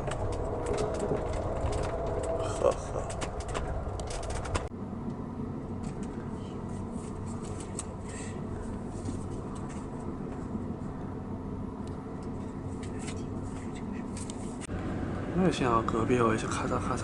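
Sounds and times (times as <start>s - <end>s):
train rumble from inside carriage: 0.0s - 17.0s.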